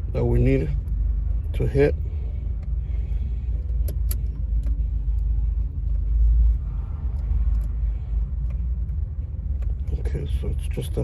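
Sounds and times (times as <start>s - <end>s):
steady low rumble: 0.0s - 11.0s
light metallic clicks and taps: 3.6s - 6.0s.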